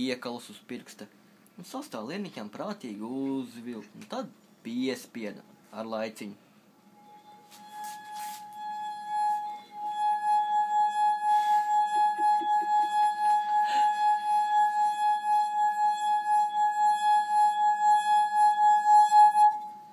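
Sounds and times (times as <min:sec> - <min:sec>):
glass rim ringing tone: 0:07.0 - 0:19.8.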